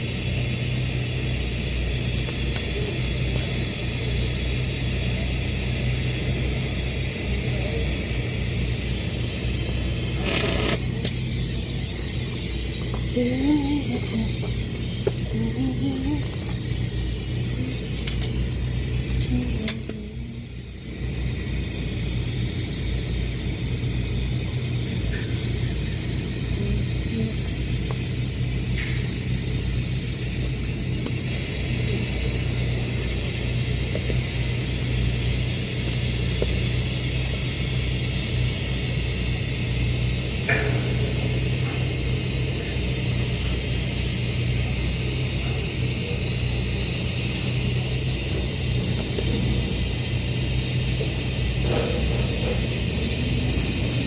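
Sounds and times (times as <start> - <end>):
welding arc crackling hiss: 0.0 - 54.0
welding machine hum: 0.0 - 54.0.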